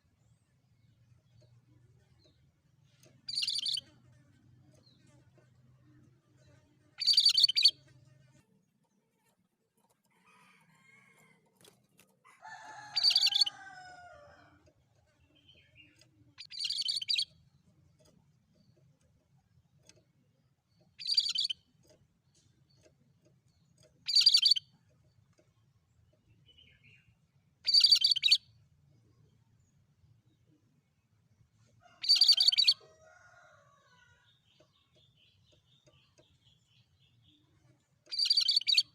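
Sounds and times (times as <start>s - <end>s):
bulbul singing: 3.2s - 4.0s, 7.0s - 7.8s, 15.2s - 17.6s, 20.7s - 21.7s, 23.5s - 24.8s, 26.3s - 28.5s, 32.0s - 32.8s, 34.3s - 38.9s.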